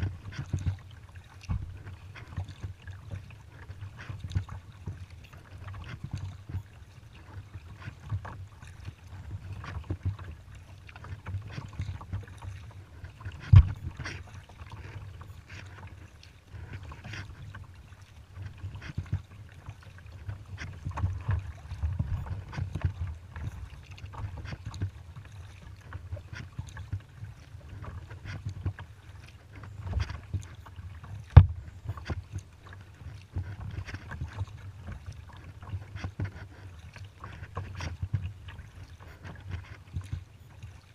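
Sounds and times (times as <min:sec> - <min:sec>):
paddle splashes and drips: 0:00.0 - 0:40.9.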